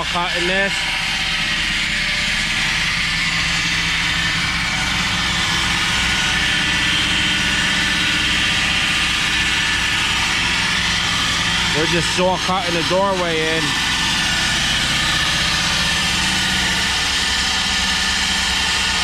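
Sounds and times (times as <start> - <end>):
concrete saw grinding: 0.0 - 19.0
engine running: 0.0 - 19.0.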